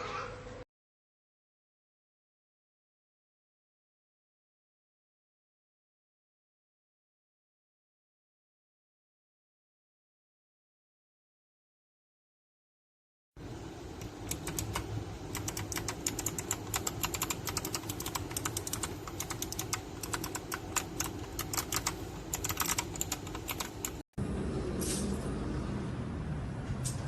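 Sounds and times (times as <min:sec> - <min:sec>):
mechanical keyboard typing: 0:14.0 - 0:24.0.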